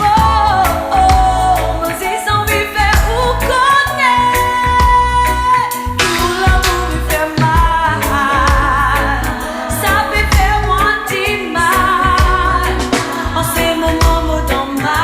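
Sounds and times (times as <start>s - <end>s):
heavy bass line: 0.0s - 15.0s
person singing with vibrato: 0.0s - 15.0s
drum beat: 10.1s - 10.8s, 12.1s - 14.4s.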